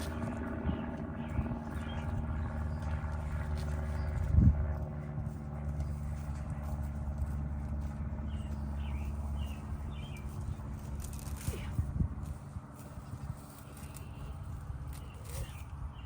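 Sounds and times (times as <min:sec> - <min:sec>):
engine running: 0:00.0 - 0:16.0
bird chirping: 0:08.2 - 0:10.7.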